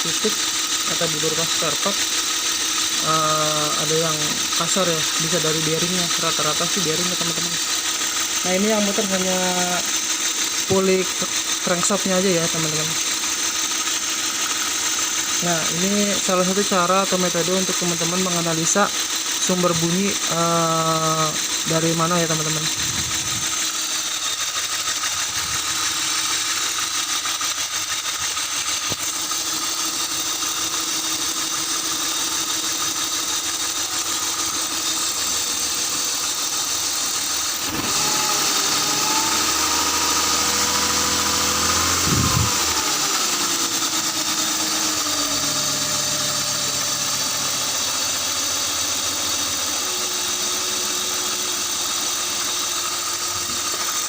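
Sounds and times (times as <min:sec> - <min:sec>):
car engine idling and revving: 0:34.0 - 0:50.4.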